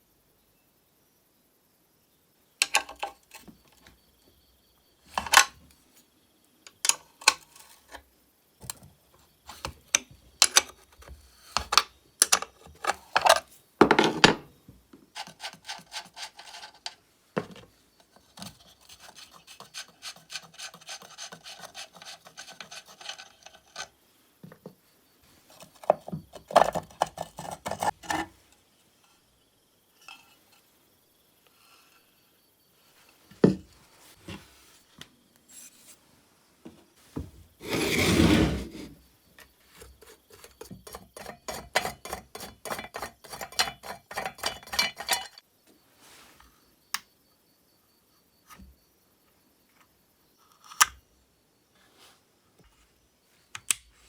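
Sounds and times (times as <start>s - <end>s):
chainsaw parts knocking and clattering: 5.1s - 5.6s
scraping and rubbing: 15.2s - 17.5s, 18.1s - 24.0s, 25.3s - 28.5s, 37.6s - 39.0s
steady rasping: 18.6s - 23.9s.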